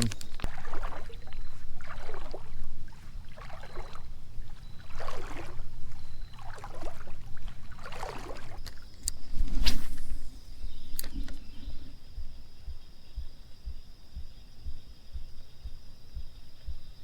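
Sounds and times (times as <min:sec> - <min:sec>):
legs wading through water: 0:00.0 - 0:12.3
steady low rumble: 0:09.2 - 0:17.0.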